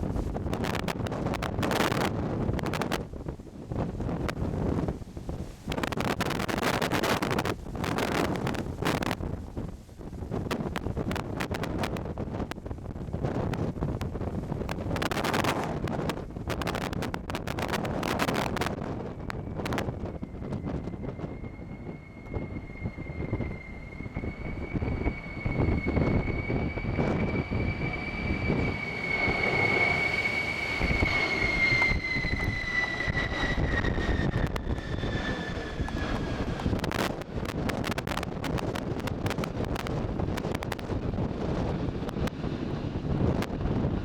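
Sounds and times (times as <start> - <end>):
wind buffeting microphone: 0.0 - 44.0
jet engines whining: 17.5 - 38.2.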